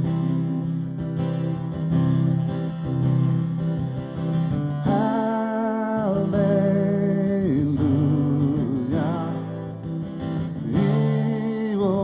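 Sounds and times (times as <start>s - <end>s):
acoustic guitar strumming: 0.0s - 12.0s
person singing: 4.9s - 12.0s.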